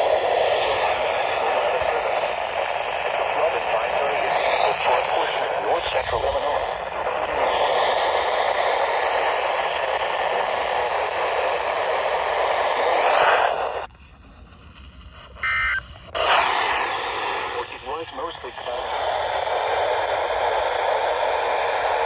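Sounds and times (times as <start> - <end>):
radio static hiss: 0.0 - 22.0
short electronic beep: 15.4 - 15.8.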